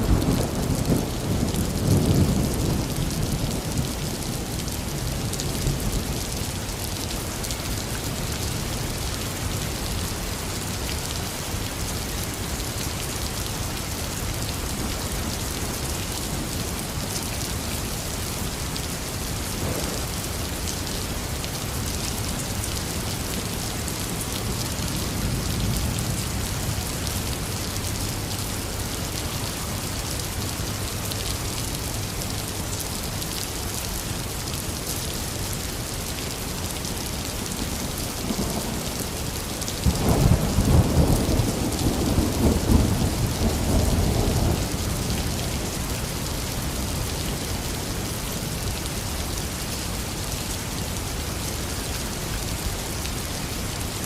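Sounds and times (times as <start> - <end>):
heavy rain falling: 0.0 - 54.0
low thunder rumbling: 39.8 - 45.2.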